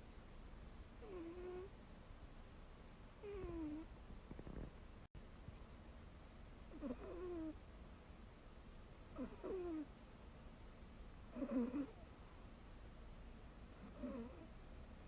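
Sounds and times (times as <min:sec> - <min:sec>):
cat snoring squeaky breaths: 0:01.0 - 0:01.7, 0:06.7 - 0:07.6, 0:09.2 - 0:09.9, 0:11.3 - 0:12.0, 0:13.8 - 0:14.5.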